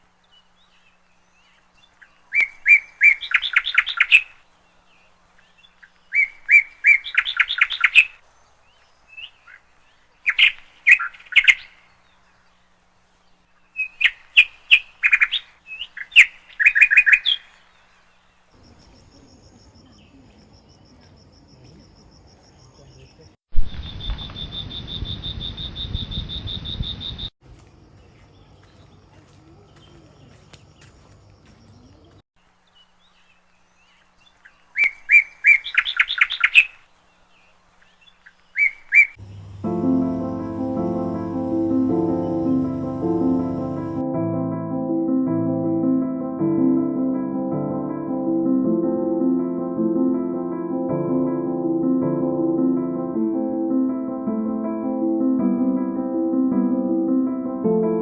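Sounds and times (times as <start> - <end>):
songbird singing: 0.0 - 44.1.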